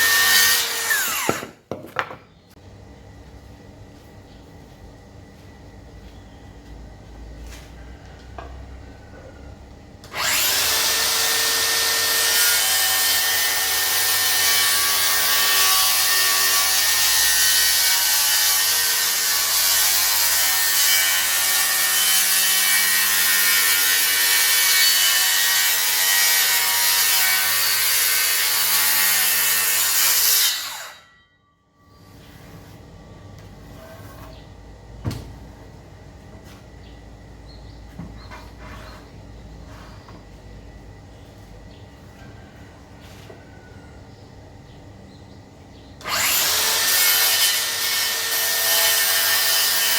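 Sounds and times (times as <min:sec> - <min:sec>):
circular saw cutting wood: 0:00.0 - 0:01.6, 0:10.1 - 0:31.2, 0:46.0 - 0:49.9.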